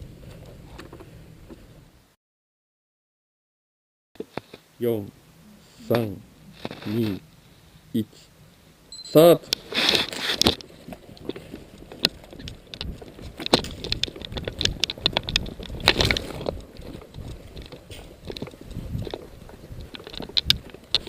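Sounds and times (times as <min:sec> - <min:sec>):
footsteps: 0:09.4 - 0:21.0
clothing rustling: 0:09.5 - 0:21.0
small clicks and crackles: 0:09.5 - 0:21.0.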